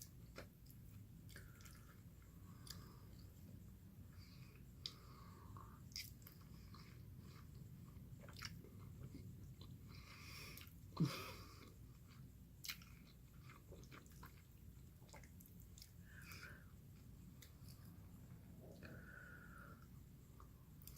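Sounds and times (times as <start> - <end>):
person chewing and biting: 5.9 - 9.8, 11.9 - 16.0.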